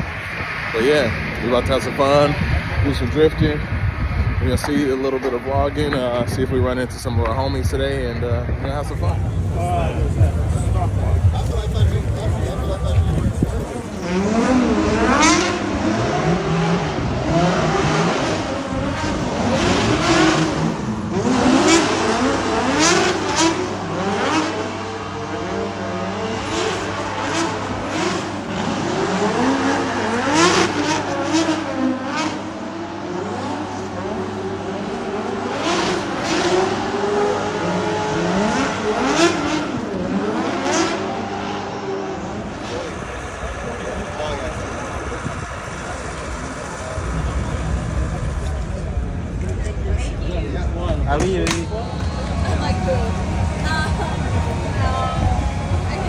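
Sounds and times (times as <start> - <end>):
car engines revving hard: 0.0 - 56.0.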